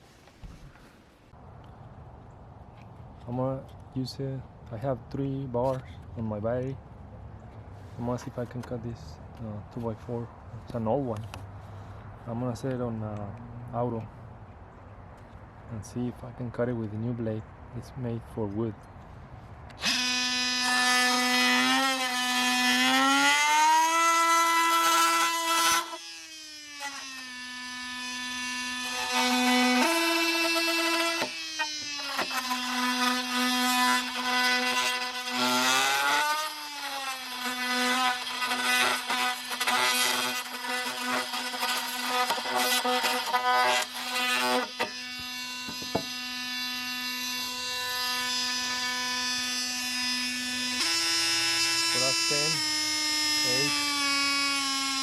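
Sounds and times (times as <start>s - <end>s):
oscillating multi-tool cutting wood: 19.7s - 55.0s.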